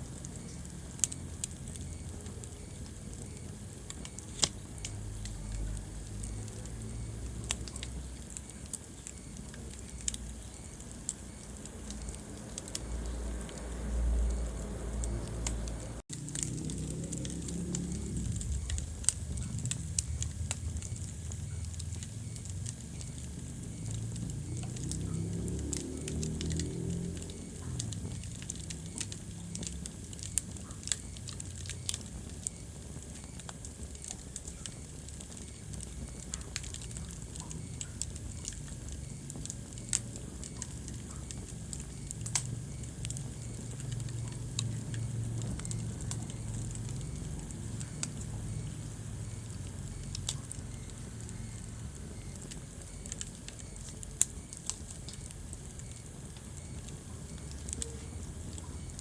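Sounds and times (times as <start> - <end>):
fire rumbling: 0.0 - 59.0
wood crackling and popping: 0.0 - 59.0.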